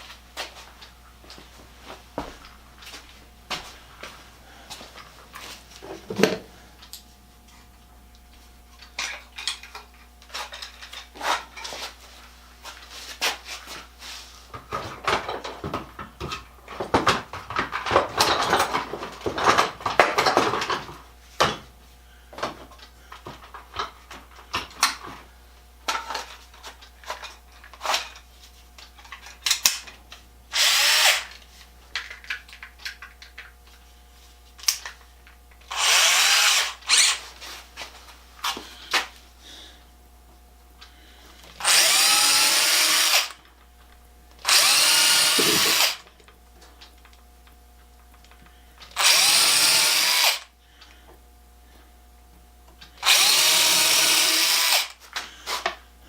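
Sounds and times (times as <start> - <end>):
power drill boring into wood: 30.5 - 31.3, 35.7 - 37.2, 41.6 - 43.4, 44.4 - 46.0, 49.0 - 50.5, 53.0 - 55.0.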